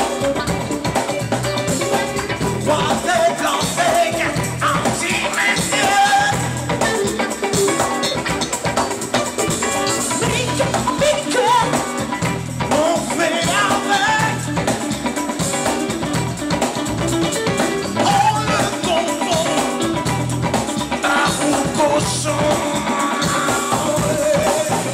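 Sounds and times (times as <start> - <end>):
funk band playing: 0.0 - 24.9
person singing: 1.8 - 8.1, 9.8 - 15.5, 17.4 - 24.9.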